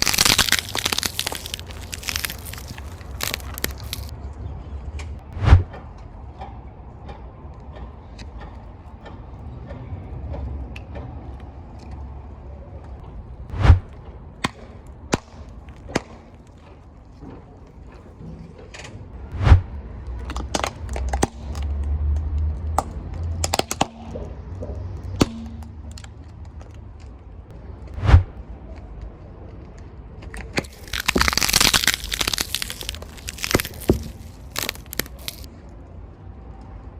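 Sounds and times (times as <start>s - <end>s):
object crunching under tyre: 0.0s - 4.1s, 30.5s - 35.5s.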